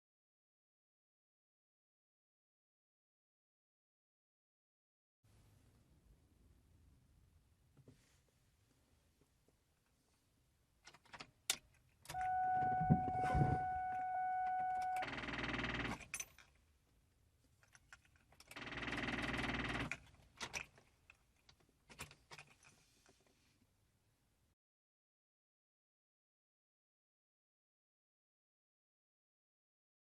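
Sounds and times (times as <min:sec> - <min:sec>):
car keys jangling: 0:10.9 - 0:16.6
electronic warning tone: 0:12.1 - 0:15.9.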